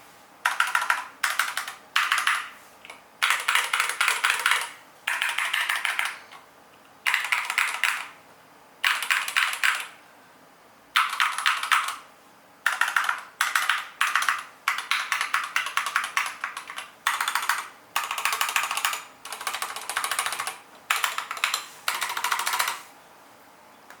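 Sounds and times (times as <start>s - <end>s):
mechanical keyboard typing: 0.4s - 2.6s, 3.2s - 6.3s, 7.1s - 8.2s, 8.8s - 10.0s, 11.0s - 12.0s, 12.6s - 22.9s.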